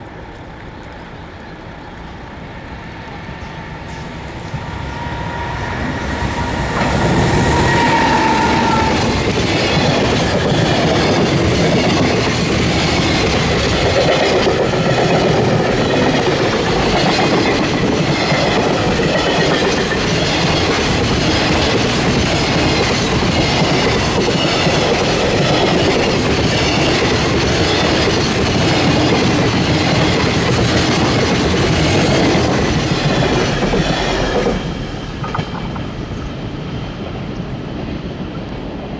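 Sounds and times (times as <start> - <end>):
freight train passing: 0.0 - 38.9
steady high tone: 3.2 - 10.5.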